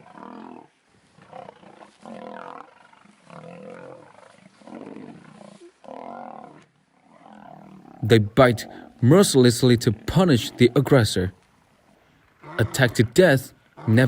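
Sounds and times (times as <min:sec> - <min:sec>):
lions roaring: 0:00.0 - 0:09.1, 0:12.4 - 0:14.0.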